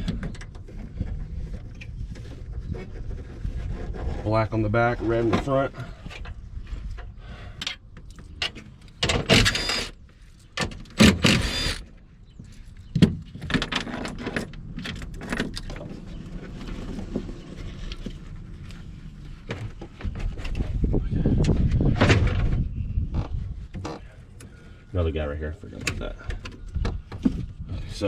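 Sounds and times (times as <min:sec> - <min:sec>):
loud rattling bursts: 0:09.1 - 0:10.0, 0:11.0 - 0:11.9.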